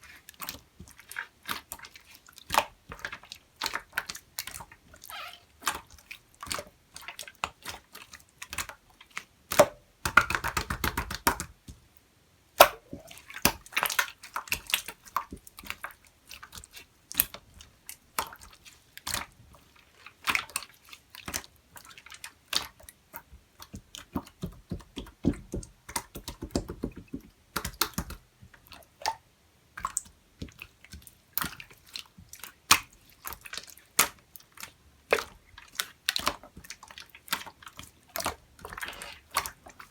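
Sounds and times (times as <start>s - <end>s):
slime squishing wet clicks: 27.5s - 28.2s.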